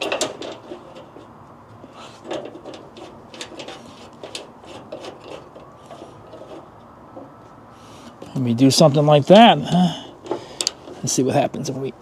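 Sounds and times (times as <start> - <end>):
metal bracket scraping and clicking: 0.0 - 7.4.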